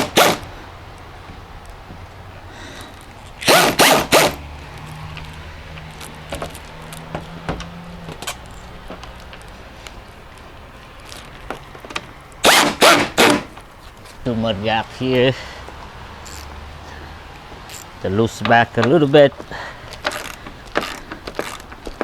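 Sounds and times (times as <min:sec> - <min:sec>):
ratchet wrench strokes: 0:03.4 - 0:04.4, 0:12.4 - 0:13.4, 0:16.2 - 0:16.5, 0:17.7 - 0:17.9, 0:20.1 - 0:21.8.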